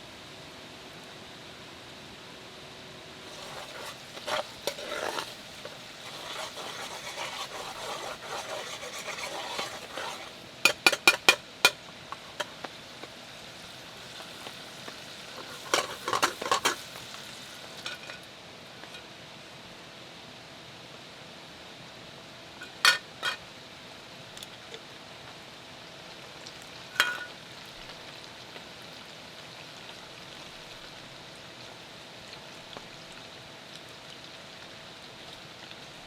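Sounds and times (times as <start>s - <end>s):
food sizzling in a pan: 3.2s - 19.2s, 24.8s - 36.0s
utensil stirring and scraping: 3.3s - 12.5s, 15.3s - 17.0s
sharp taps on a pan: 10.6s - 11.8s.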